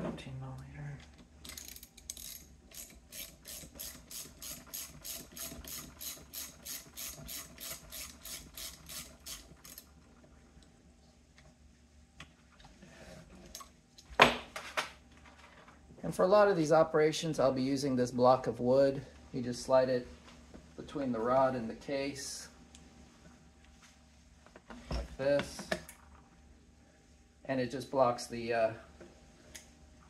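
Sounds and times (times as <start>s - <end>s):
ratchet wrench clicking: 1.4s - 9.8s.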